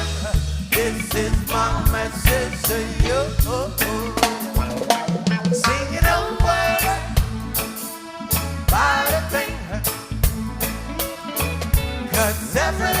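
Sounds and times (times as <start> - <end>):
person singing: 0.0 - 7.2
reggae music: 0.0 - 13.0.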